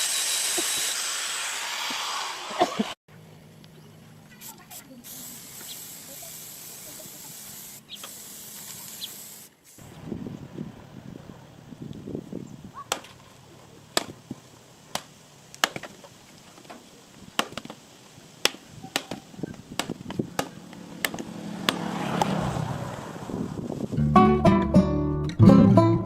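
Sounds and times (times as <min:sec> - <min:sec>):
knife chopping into wood: 0:14.9 - 0:15.9, 0:17.4 - 0:17.8, 0:18.4 - 0:22.4
guitar music: 0:24.0 - 0:26.0.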